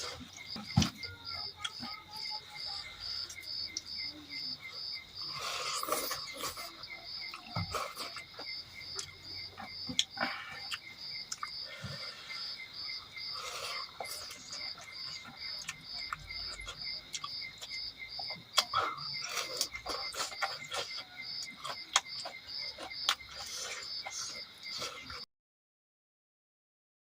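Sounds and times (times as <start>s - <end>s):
insect eating noise: 0.0s - 25.2s
insects chirping: 0.0s - 25.2s.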